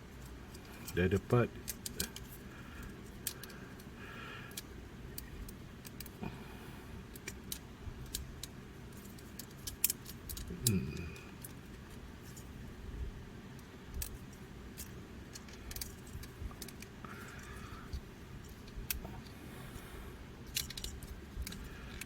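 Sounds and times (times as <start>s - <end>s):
toy parts clicking: 0.2s - 6.2s, 7.1s - 12.5s, 13.5s - 19.4s, 20.4s - 22.0s
low voice sound: 10.5s - 11.3s.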